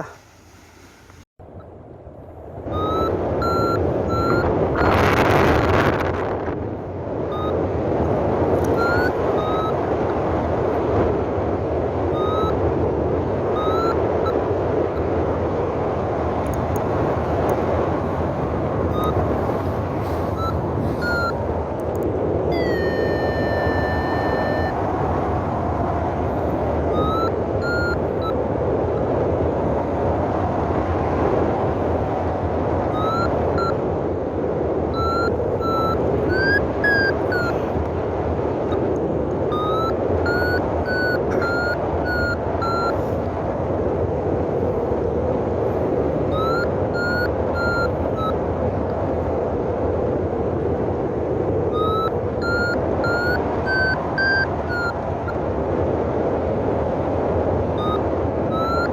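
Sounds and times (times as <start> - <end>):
wind noise on microphone: 1.5 - 58.9
variometer quick beeps rising: 2.7 - 6.0, 7.3 - 7.6, 8.6 - 9.8, 12.1 - 12.6, 13.5 - 14.4, 18.8 - 21.5, 22.5 - 24.8, 26.9 - 28.4, 32.9 - 33.8, 34.9 - 37.7, 39.5 - 43.0, 46.3 - 48.4, 51.7 - 55.4, 57.8 - 58.9.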